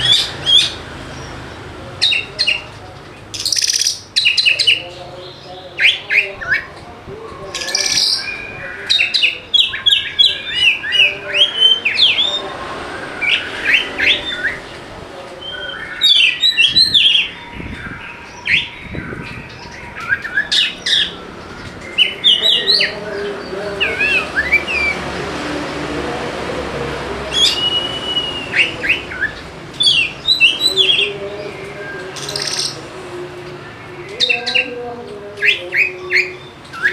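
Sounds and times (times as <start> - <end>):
bird singing chirps and whistles: 3.3 - 4.9, 7.4 - 14.7, 15.4 - 25.1, 27.3 - 32.8, 35.4 - 36.9.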